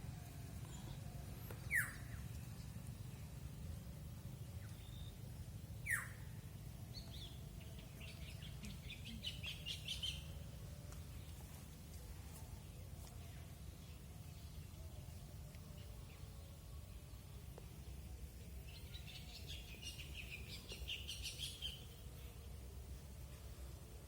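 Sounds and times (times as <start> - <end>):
steady low hum: 0.0 - 24.0
short high bird chirps: 1.6 - 2.2.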